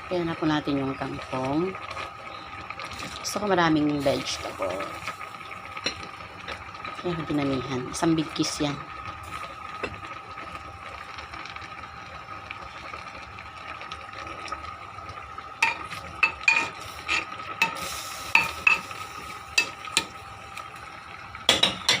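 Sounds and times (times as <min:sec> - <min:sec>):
metal utensil clinking in pot: 0:15.6 - 0:17.8.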